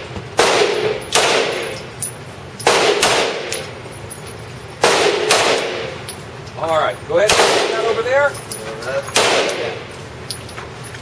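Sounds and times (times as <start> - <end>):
gunshots echoing indoors: 0.4 - 1.9, 2.6 - 3.7, 4.8 - 6.0, 7.2 - 8.0, 9.1 - 9.8.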